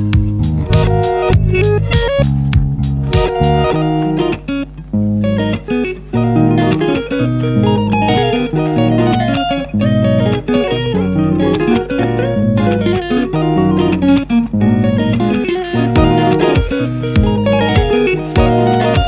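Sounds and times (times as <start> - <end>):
guitar music with bass line: 0.0 - 19.0
drum hits: 0.1 - 3.5, 16.0 - 19.0.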